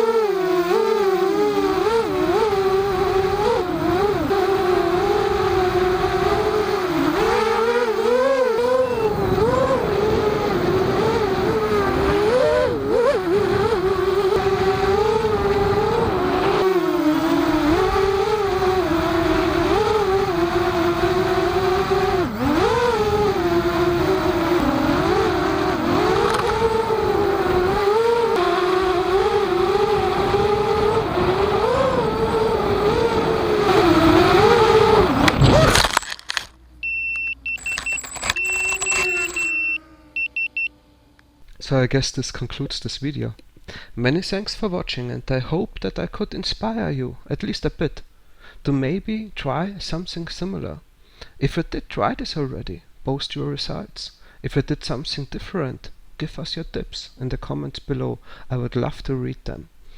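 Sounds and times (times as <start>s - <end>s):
drone motors whining: 0.0s - 41.5s.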